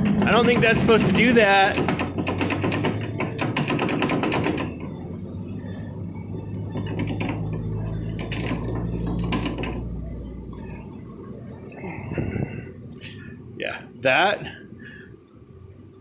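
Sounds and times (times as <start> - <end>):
car differential metallic clatter: 0.0 - 10.8.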